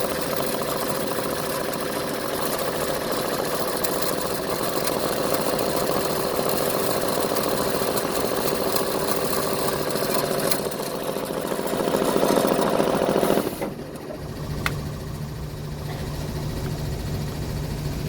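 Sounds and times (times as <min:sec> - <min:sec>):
machine harsh grinding: 0:00.0 - 0:18.0
steady machine hum: 0:00.0 - 0:18.0.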